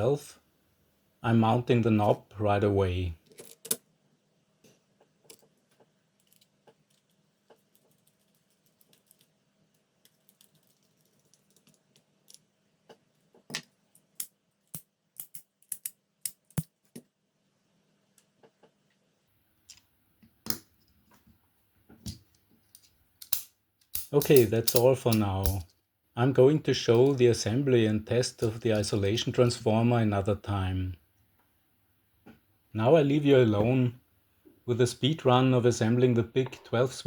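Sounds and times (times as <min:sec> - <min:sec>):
plastic parts clicking and tapping: 0:21.9 - 0:25.8.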